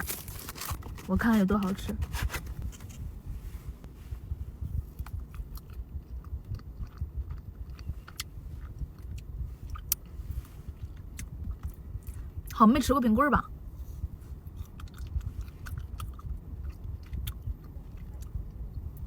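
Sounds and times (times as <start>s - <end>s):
low rumble: 0.0s - 19.0s.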